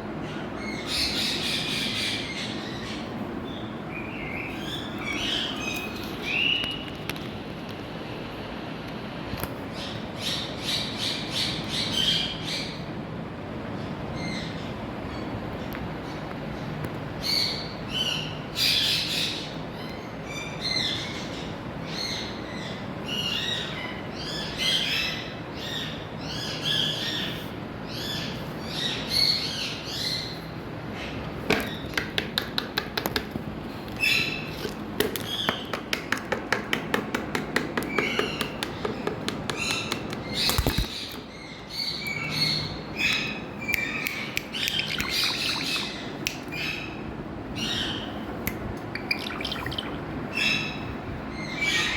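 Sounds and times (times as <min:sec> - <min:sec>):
parakeet calling: 0:37.8 - 0:48.3, 0:48.9 - 0:51.9.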